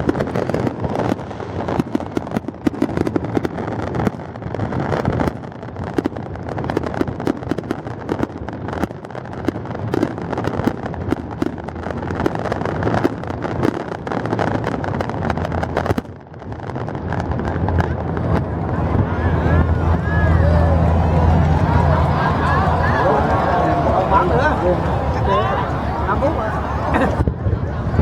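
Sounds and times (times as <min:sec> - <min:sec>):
fireworks bangs and crackles: 0:00.0 - 0:27.2
low rumble: 0:18.2 - 0:26.7.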